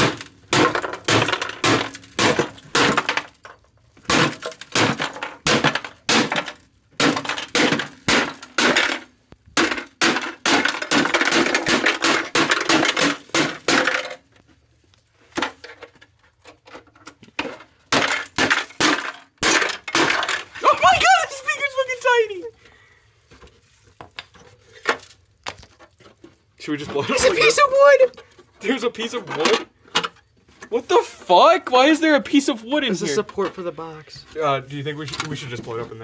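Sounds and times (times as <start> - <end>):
speaker cabinet being smashed: 0.0 - 14.3, 17.4 - 22.2.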